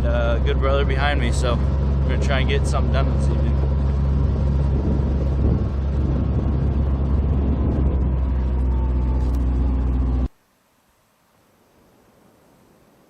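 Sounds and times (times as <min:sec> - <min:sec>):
buggy engine running: 0:00.0 - 0:10.3.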